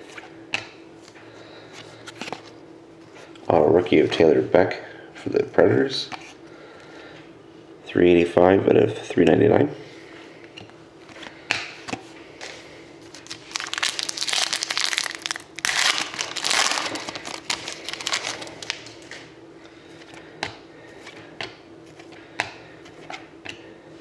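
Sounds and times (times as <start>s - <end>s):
foil wrapper crinkling: 13.0s - 19.2s.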